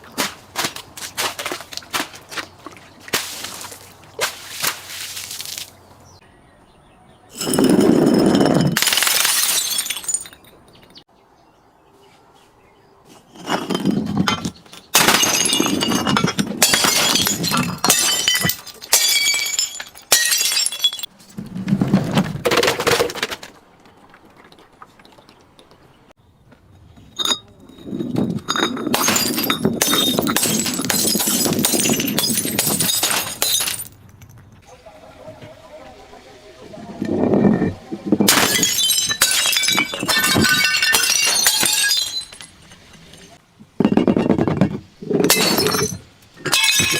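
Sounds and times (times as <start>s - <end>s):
glass crushing and breaking: 7.4s - 11.0s, 13.4s - 21.1s, 27.1s - 34.4s, 38.2s - 46.9s
sharp glass clinks: 27.2s - 33.9s.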